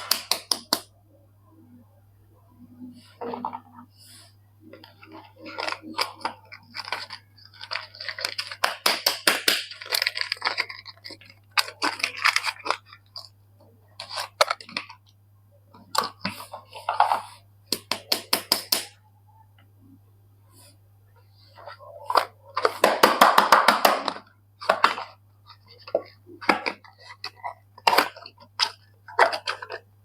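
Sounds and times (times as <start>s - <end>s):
soap wrappers crackling: 4.8s - 13.4s, 14.0s - 15.1s, 22.0s - 29.9s.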